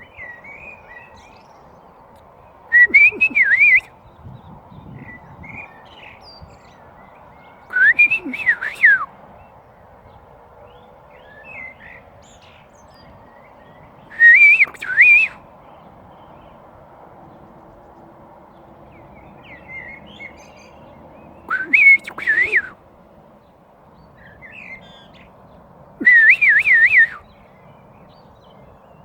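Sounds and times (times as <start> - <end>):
loud whistled bird phrases: 2.7 - 4.2, 4.8 - 9.5, 10.7 - 15.5, 19.4 - 22.8, 26.0 - 28.2.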